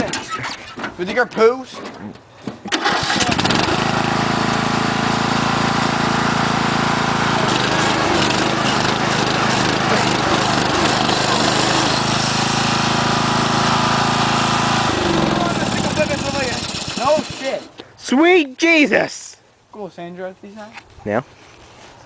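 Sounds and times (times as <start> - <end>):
lawn mower engine running: 2.7 - 17.7.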